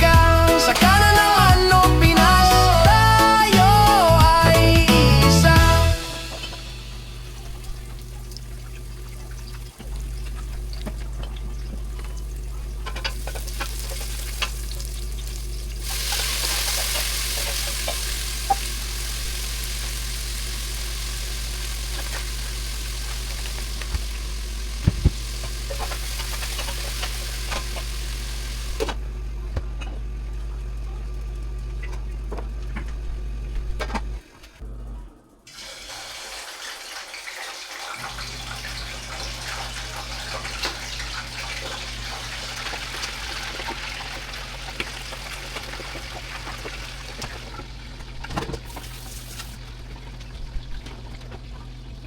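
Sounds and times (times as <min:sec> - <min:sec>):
low hum: 0:00.0 - 0:35.5
hissing: 0:15.7 - 0:28.9.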